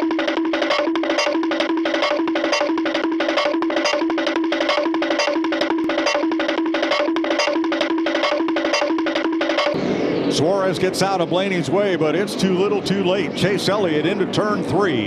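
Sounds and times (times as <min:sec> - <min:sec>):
wood-block-like clicks: 0:00.0 - 0:09.8
sustained low notes: 0:00.0 - 0:14.7.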